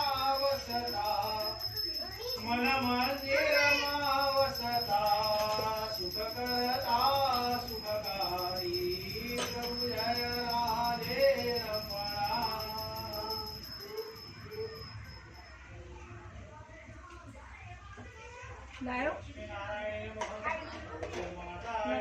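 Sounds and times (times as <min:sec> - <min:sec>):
jingling bells: 0:00.0 - 0:16.2.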